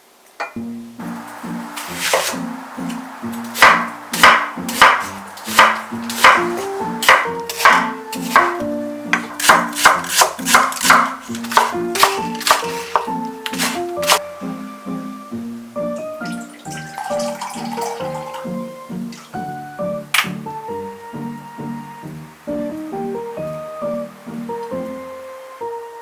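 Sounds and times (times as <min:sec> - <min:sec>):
light background music: 0:00.4 - 0:26.0
knife chopping on cutting board: 0:02.0 - 0:02.4, 0:03.5 - 0:14.2.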